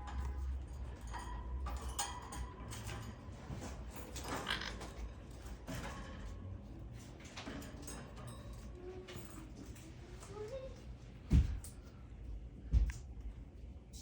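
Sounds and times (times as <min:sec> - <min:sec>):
parrot scraping and rattling in cage: 0:00.0 - 0:08.8.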